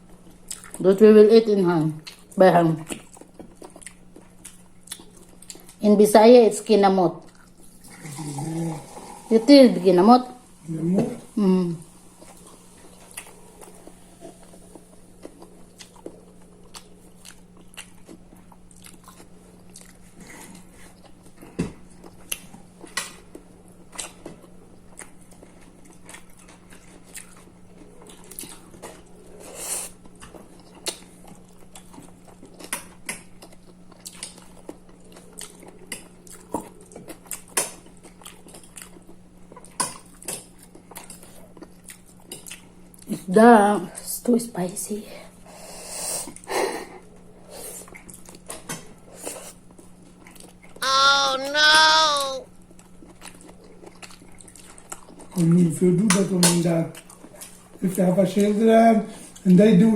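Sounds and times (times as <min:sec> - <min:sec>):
chewing and mouth smacks: 0:00.2 - 0:00.8, 0:02.0 - 0:05.8, 0:12.2 - 0:29.2, 0:29.9 - 0:43.2, 0:47.8 - 0:50.8, 0:52.6 - 0:55.5.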